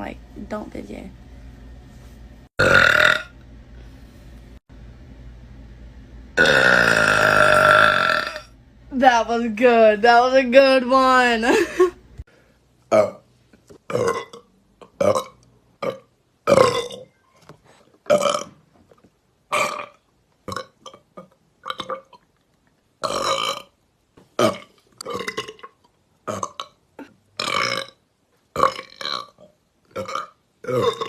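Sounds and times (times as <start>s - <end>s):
girl burping loudly: 2.6s - 3.4s, 6.4s - 8.5s, 12.9s - 13.2s, 13.9s - 17.1s, 18.1s - 18.5s, 23.0s - 23.7s, 24.4s - 28.0s, 28.6s - 31.0s.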